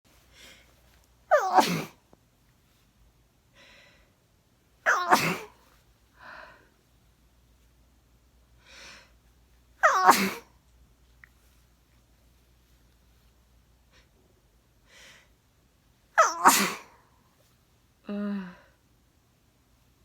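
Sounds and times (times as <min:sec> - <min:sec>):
soft breaths: 0:00.1 - 0:01.2, 0:02.4 - 0:04.4, 0:05.5 - 0:07.8, 0:08.4 - 0:09.8, 0:11.0 - 0:16.1
person sneezing: 0:01.3 - 0:02.0, 0:04.9 - 0:05.6, 0:09.8 - 0:10.5, 0:16.2 - 0:17.0.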